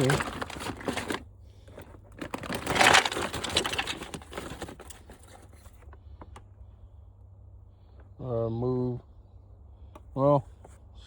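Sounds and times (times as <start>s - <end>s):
plastic and metal parts rattling: 0.0s - 6.0s.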